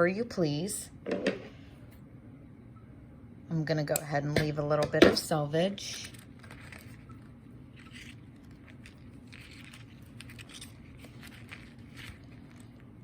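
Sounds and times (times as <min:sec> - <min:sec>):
low room hum: 0:00.0 - 0:13.0
string and cardstock rustling: 0:05.8 - 0:12.9.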